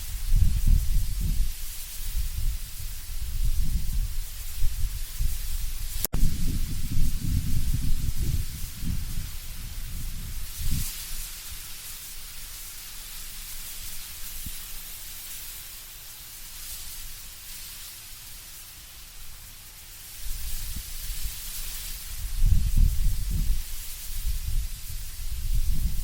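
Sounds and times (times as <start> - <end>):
low rumbling gust: 0.0 - 10.9, 22.2 - 26.0
wind rustling leaves: 0.0 - 26.0.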